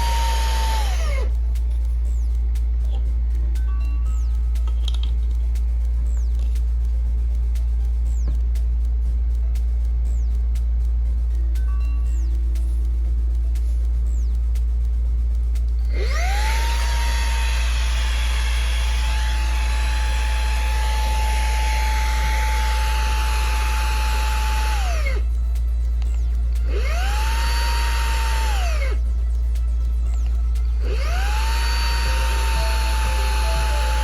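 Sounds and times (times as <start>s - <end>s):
vacuum cleaner motor whine: 0.0s - 1.3s, 16.0s - 25.2s, 26.7s - 29.0s, 30.8s - 34.0s.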